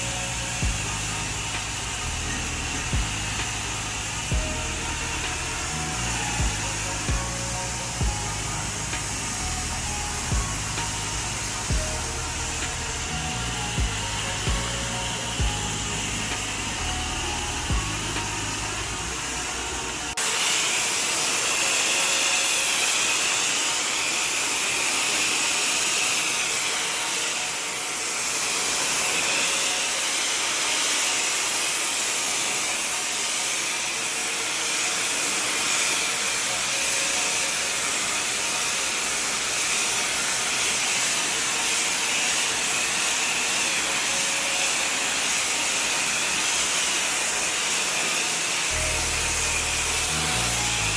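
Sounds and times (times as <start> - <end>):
pressure washer spraying water: 0.0 - 50.9.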